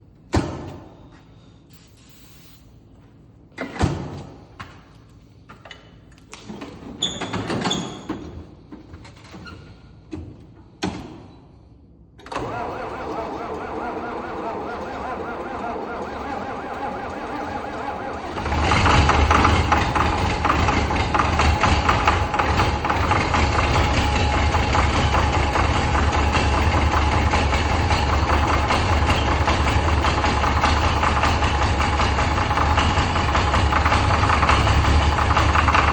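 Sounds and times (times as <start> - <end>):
starter whine: 12.2 - 35.9
engine running: 12.3 - 35.9.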